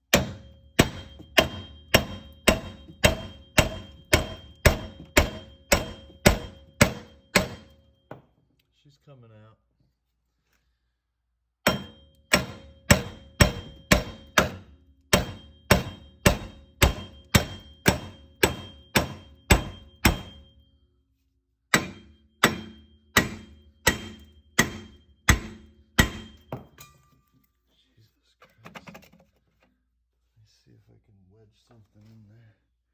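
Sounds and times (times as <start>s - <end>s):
hammer striking metal hub: 0.1s - 8.2s, 11.7s - 20.5s, 21.7s - 27.2s.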